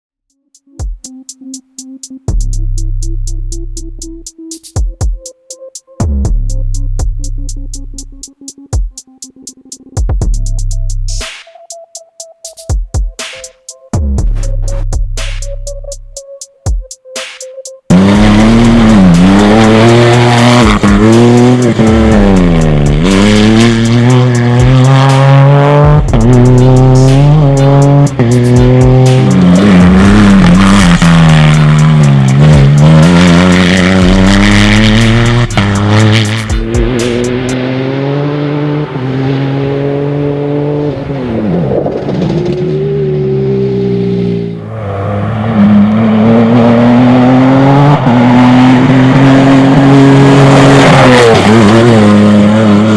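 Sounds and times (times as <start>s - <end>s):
rally car engine revving: 17.9s - 52.9s.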